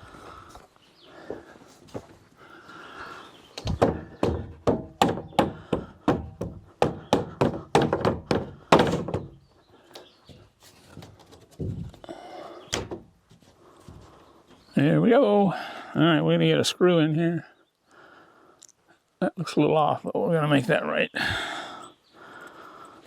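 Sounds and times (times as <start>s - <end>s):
soft knocks on wood: 3.6s - 9.4s
wooden thunks: 3.6s - 9.5s, 10.3s - 13.2s.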